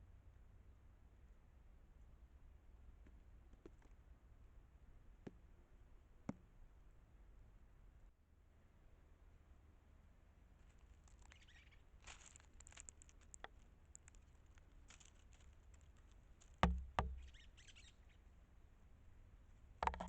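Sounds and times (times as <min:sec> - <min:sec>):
light rustling: 0:10.6 - 0:17.9
faint scattered ticks: 0:10.6 - 0:18.2
sharp knocks: 0:16.6 - 0:17.3.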